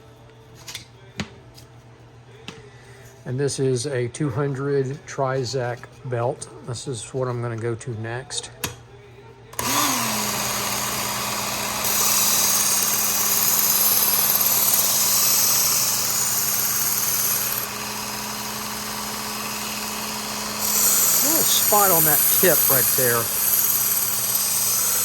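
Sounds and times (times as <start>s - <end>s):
belt sharpener motor hum: 9.6s - 25.0s.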